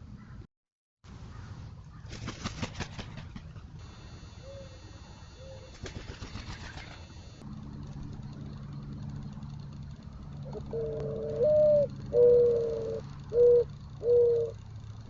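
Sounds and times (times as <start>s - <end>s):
steady low hum: 1.1s - 15.0s
low coo-like bird notes: 10.4s - 14.7s.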